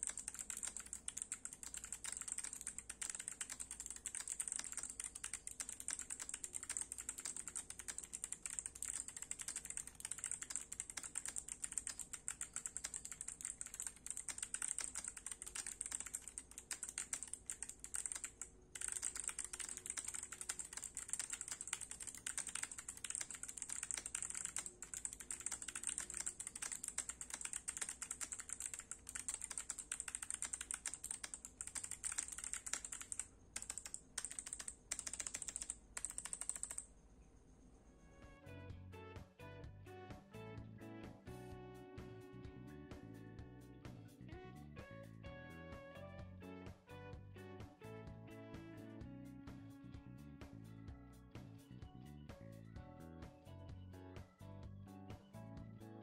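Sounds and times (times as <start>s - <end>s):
fast typing on clicky keyboard: 0.0s - 36.9s.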